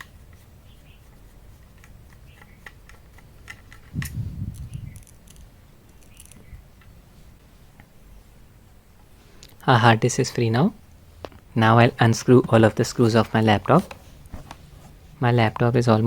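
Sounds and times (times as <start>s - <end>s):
screwdriver clicks and scratches: 1.6s - 6.4s.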